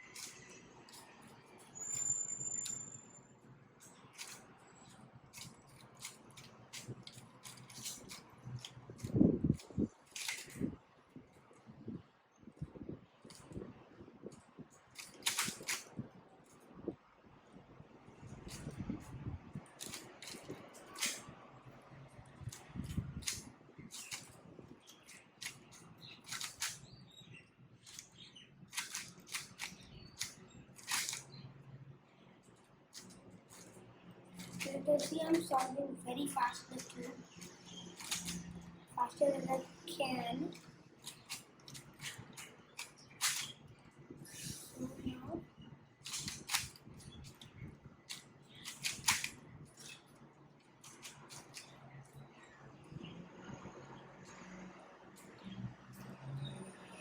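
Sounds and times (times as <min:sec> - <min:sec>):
plastic puzzle cube clicking: 0:00.1 - 0:01.0, 0:03.9 - 0:10.6, 0:15.0 - 0:15.9, 0:19.8 - 0:21.2, 0:22.5 - 0:26.9, 0:27.8 - 0:31.4, 0:34.4 - 0:38.5, 0:40.5 - 0:43.6, 0:46.0 - 0:47.5, 0:48.1 - 0:50.0, 0:50.8 - 0:51.8.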